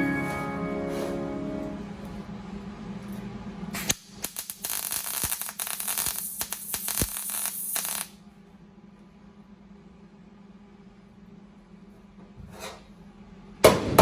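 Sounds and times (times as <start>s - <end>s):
welding arc crackling: 3.8s - 8.2s.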